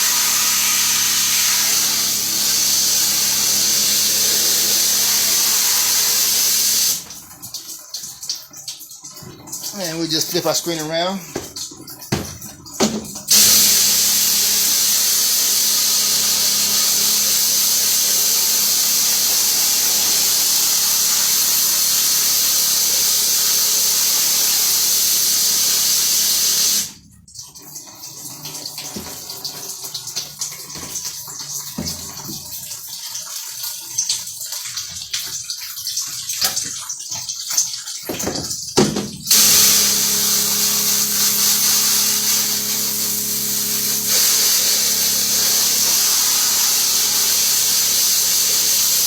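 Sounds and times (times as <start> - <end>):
water spraying hiss: 0.0 - 7.1, 9.7 - 11.1, 13.3 - 27.0, 39.3 - 49.0.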